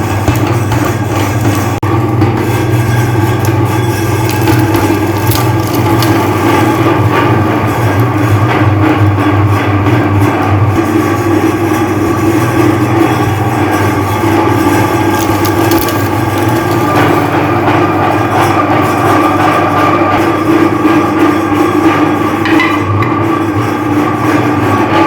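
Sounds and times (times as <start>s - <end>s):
hard candy crunching: 0.0s - 9.1s, 13.7s - 18.5s
meat grinder motor hum: 0.0s - 25.0s.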